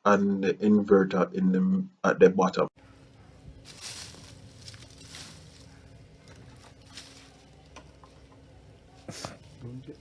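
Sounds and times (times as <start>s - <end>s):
low steady hum: 2.8s - 10.0s
rustling and scuffing: 3.0s - 9.6s.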